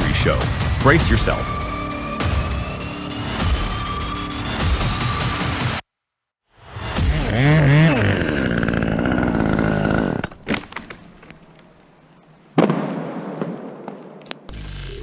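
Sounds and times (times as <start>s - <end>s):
chainsaw engine revving: 6.9s - 10.8s
sharp cracks: 7.5s - 14.8s.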